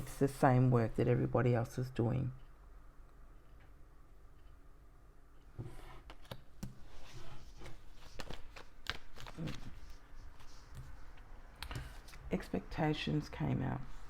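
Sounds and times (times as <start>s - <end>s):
cards being shuffled: 6.1s - 11.0s.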